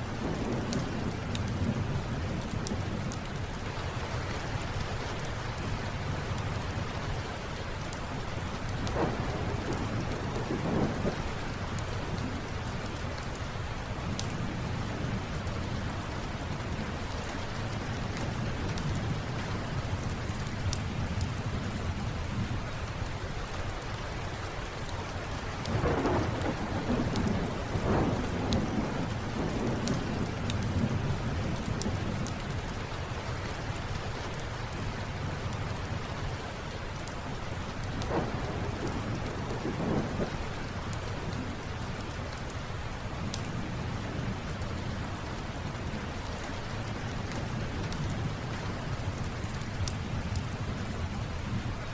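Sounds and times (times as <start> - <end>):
rolling thunder rumble: 0.0 - 3.4, 8.7 - 12.8, 25.7 - 32.5, 37.8 - 42.4
steady rain: 0.0 - 51.9.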